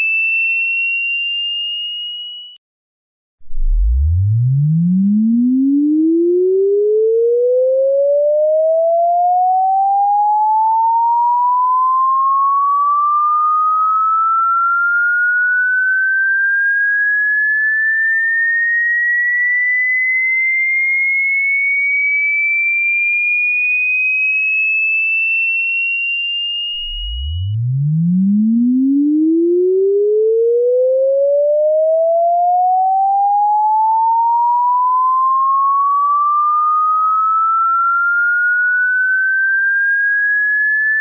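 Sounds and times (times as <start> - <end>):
sine-wave tone sweeping upward: 3.4 - 19.4, 26.6 - 41.0.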